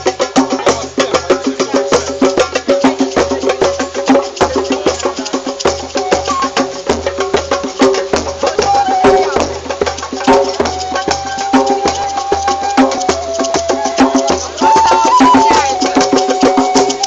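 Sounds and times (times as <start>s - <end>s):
fast percussion strikes: 0.0s - 17.0s
held pitched tones: 5.7s - 6.9s, 8.4s - 17.0s.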